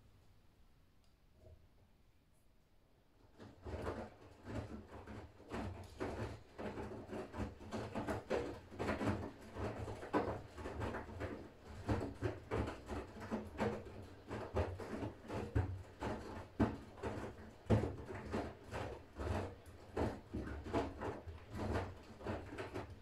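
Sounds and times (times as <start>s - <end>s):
knocks and thuds of turning drum: 3.3s - 23.0s
washing machine humming: 3.3s - 23.0s.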